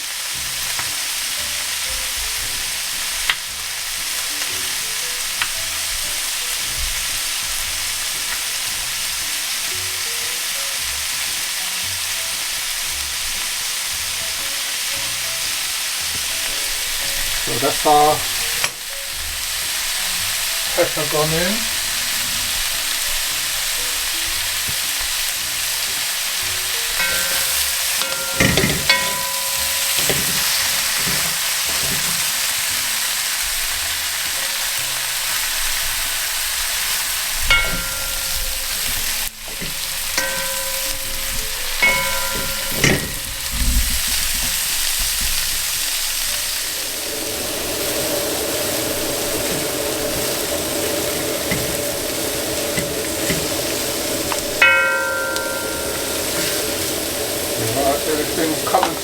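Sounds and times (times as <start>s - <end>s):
vegetables sizzling in oil: 0.0s - 59.0s
utensil scraping a pan: 15.4s - 59.0s
ringing clinks: 26.9s - 32.1s, 37.5s - 43.8s, 52.7s - 59.0s.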